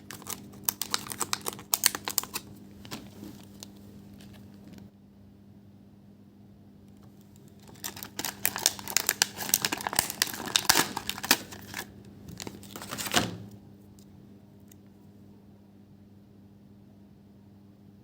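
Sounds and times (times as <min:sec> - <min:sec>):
packaging crinkling: 0:00.0 - 0:04.9, 0:07.2 - 0:13.6.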